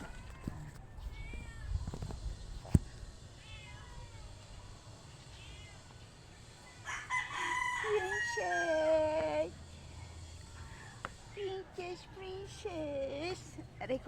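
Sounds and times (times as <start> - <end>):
cat meowing faintly: 0.0 - 1.8, 3.4 - 4.4, 5.3 - 5.9.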